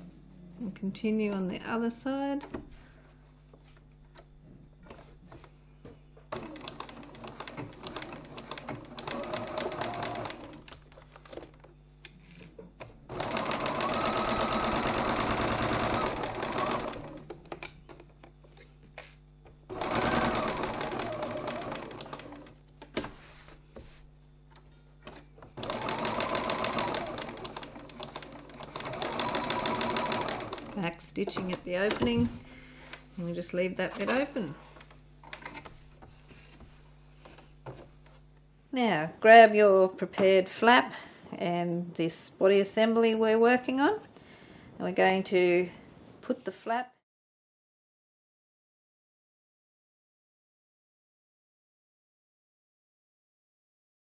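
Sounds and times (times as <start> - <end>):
sewing machine motor whine: 6.3 - 10.6, 13.1 - 17.2, 19.7 - 22.6, 25.6 - 30.8
sewing machine needle patter: 6.3 - 10.8, 13.1 - 18.0, 19.7 - 22.6, 25.1 - 32.1.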